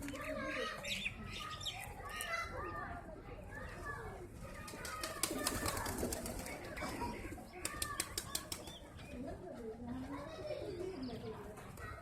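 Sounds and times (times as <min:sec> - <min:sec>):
birds calling: 0:00.0 - 0:02.9, 0:03.6 - 0:12.0.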